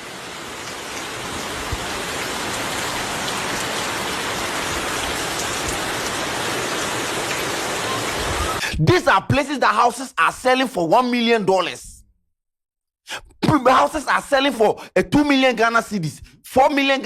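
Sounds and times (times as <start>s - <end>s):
heavy rain pouring: 0.0s - 8.6s.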